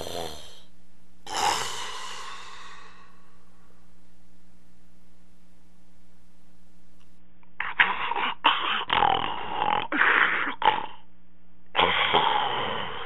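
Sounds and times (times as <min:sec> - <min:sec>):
person snoring loudly: 0:00.0 - 0:03.5, 0:08.2 - 0:11.0, 0:11.8 - 0:13.0.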